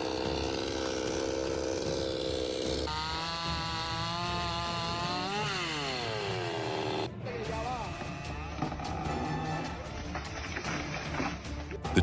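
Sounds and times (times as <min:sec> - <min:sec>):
chainsaw engine running: 0:00.0 - 0:07.1.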